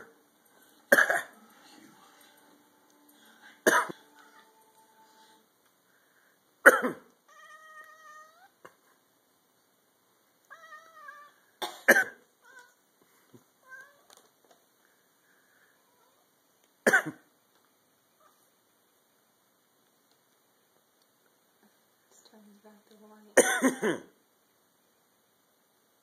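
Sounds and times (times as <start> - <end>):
person coughing: 0.9 - 1.3, 3.6 - 4.0, 6.6 - 7.1, 23.4 - 24.1
cat meowing: 7.3 - 8.6, 10.5 - 11.4, 12.4 - 12.8.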